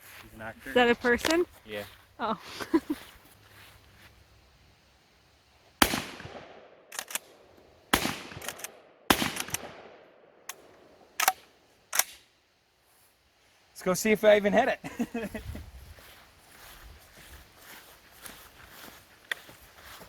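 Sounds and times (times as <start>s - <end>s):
shotgun shots with echo: 5.8s - 6.8s, 7.9s - 10.2s
small sharp cracks: 5.8s - 7.4s, 8.0s - 12.3s.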